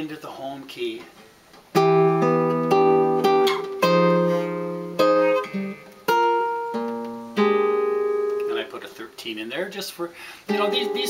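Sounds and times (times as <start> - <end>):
guitar plucking jazz chords: 1.7 - 9.2, 10.5 - 11.0.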